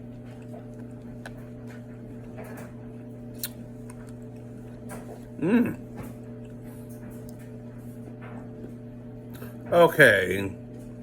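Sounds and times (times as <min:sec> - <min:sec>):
person eating with mouth sounds: 0:03.4 - 0:06.6.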